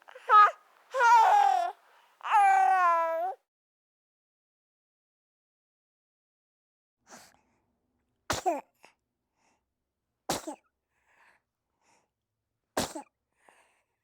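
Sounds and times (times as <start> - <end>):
baby breathing and vocal sounds: 0.0 - 3.4
baby sneezing or coughing: 8.3 - 8.7, 10.3 - 10.6, 12.8 - 13.2.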